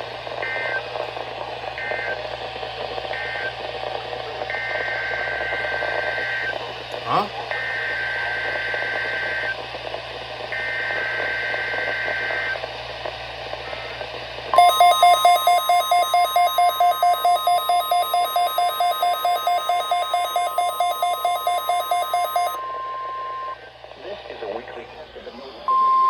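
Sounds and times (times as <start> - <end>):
buzzing data header bursts: 14.6 - 22.6
rapid receiver alarm beeping: 14.6 - 23.6
steady warning alarm tone: 14.6 - 23.6.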